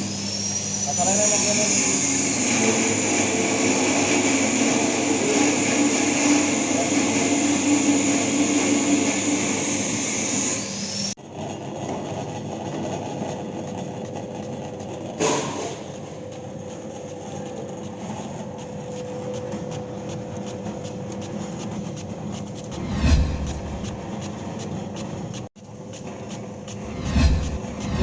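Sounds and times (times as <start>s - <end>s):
machine humming: 22.7s - 24.1s, 26.7s - 28.0s.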